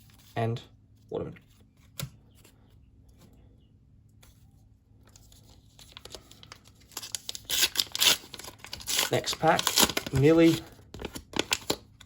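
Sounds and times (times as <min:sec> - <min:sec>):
wrapper tearing and crinkling: 0:05.8 - 0:12.0.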